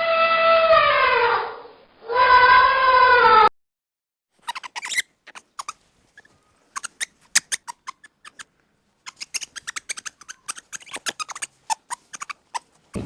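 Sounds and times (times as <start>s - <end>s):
small animal squeaking: 4.4s - 13.0s.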